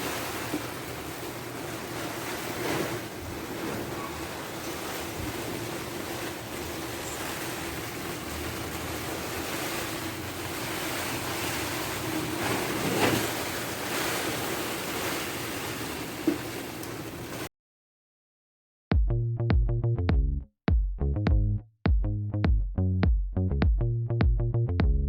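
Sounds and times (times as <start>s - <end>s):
storm wind rushing: 0.0s - 17.5s.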